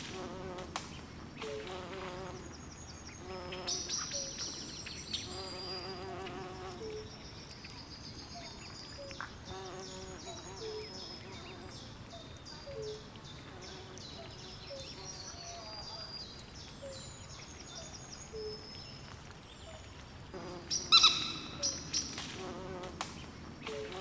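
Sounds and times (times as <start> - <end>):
insects chirping: 20.4 - 23.0.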